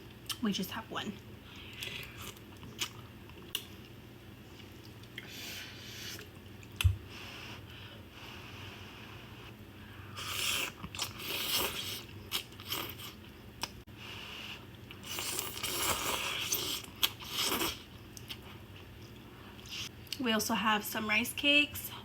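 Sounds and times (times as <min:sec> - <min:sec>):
person chewing food: 0:01.5 - 0:06.9, 0:10.2 - 0:13.8, 0:14.6 - 0:20.2.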